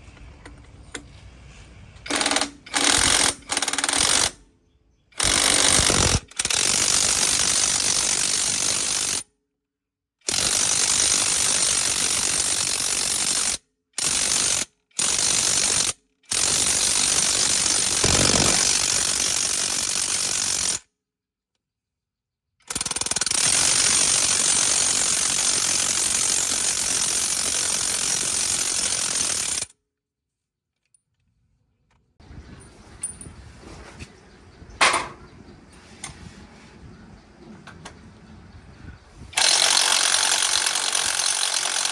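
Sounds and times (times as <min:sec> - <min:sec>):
air impact wrench rattling: 0:02.1 - 0:04.4, 0:05.2 - 0:09.2, 0:17.7 - 0:20.7, 0:39.4 - 0:41.9.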